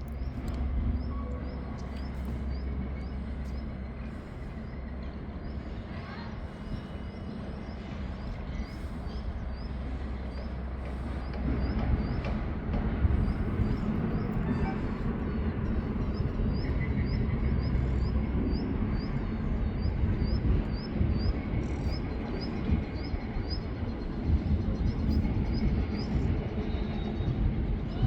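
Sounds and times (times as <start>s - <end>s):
low mechanical rumble: 0.0s - 28.0s.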